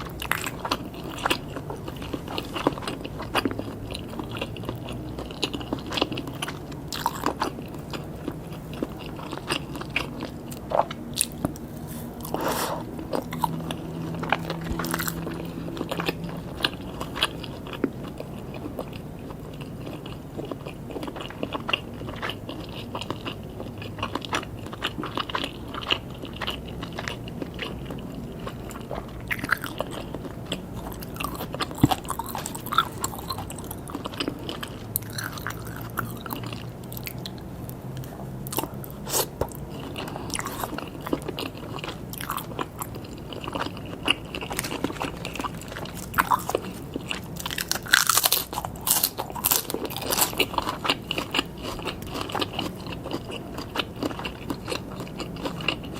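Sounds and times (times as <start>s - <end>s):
biting and chewing food: 0.0s - 55.9s
small clicks and crunches: 44.3s - 50.4s.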